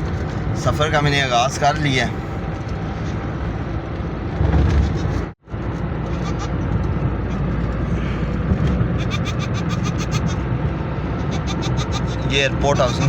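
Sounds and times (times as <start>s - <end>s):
car road and engine noise: 0.0s - 13.0s
goat bleating: 4.7s - 5.2s, 6.1s - 6.6s, 8.8s - 10.5s, 11.1s - 13.0s.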